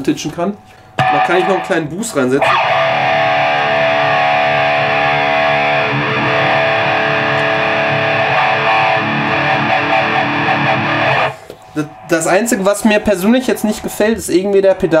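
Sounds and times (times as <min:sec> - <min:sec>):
distorted electric guitar chord: 0:01.0 - 0:12.8.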